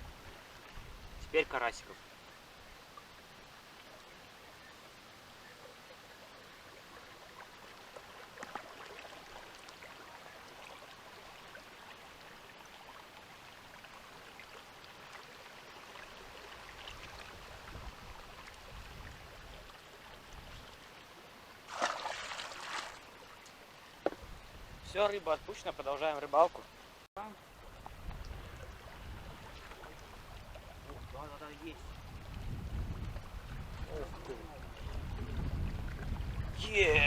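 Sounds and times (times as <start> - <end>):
flowing river water: 0.0 - 37.0
fish splashing in water: 21.7 - 23.2.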